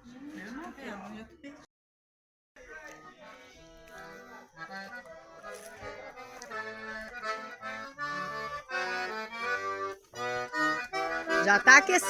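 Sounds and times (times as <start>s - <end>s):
accordion playing chords: 3.0s - 12.0s.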